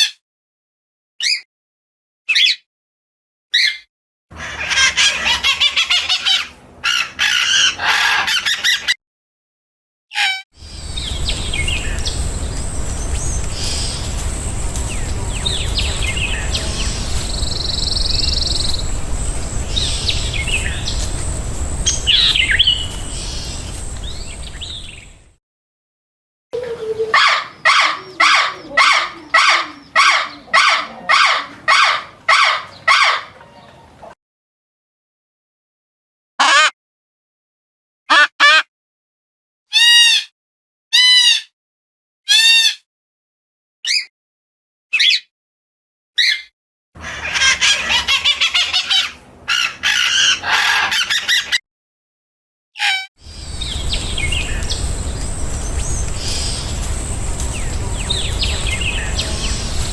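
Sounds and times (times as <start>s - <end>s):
birds chirping and calling: 3.6s - 3.8s, 4.4s - 9.0s, 10.2s - 25.3s, 26.6s - 34.1s, 46.2s - 51.6s, 52.8s - 59.9s
repeated bird call: 10.1s - 25.2s, 46.2s - 51.6s, 52.8s - 59.9s.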